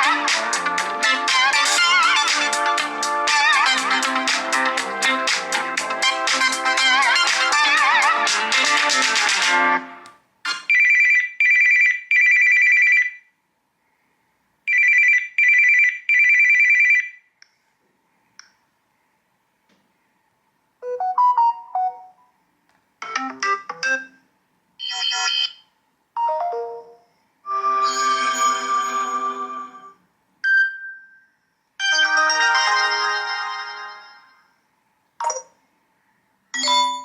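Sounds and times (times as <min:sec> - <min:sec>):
electronic phone ringing: 0:10.5 - 0:13.2, 0:14.7 - 0:17.2, 0:24.8 - 0:28.5.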